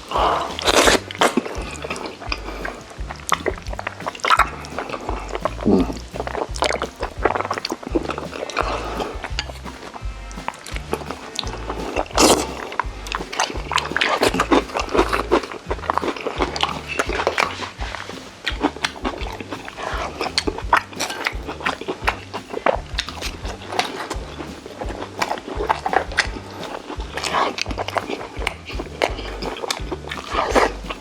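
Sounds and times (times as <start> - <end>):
person chewing food: 0.0 - 31.0
wet mouth clicks and smacks: 10.7 - 31.0.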